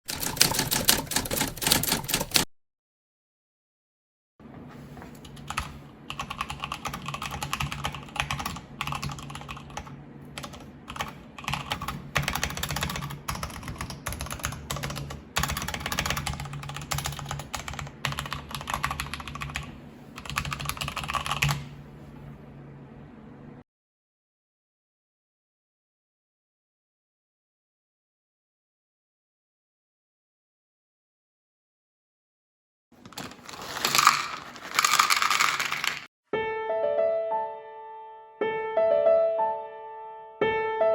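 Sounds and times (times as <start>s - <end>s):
mechanical keyboard key clacks: 0.1s - 2.5s
steady low hum: 17.6s - 23.6s.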